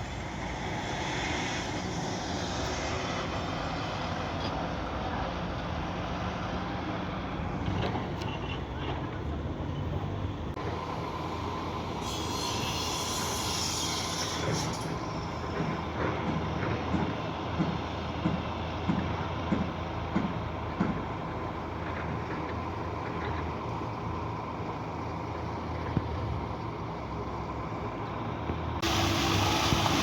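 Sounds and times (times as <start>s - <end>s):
hiss: 0.0s - 3.8s, 11.8s - 15.3s, 28.8s - 30.0s
concrete pump diesel engine: 0.0s - 30.0s.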